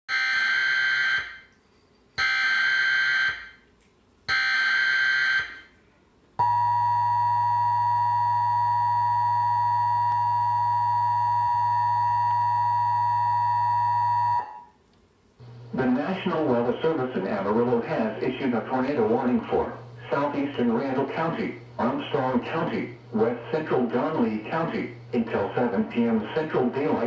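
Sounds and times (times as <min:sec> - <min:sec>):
two-tone attention signal: 0:06.4 - 0:14.7.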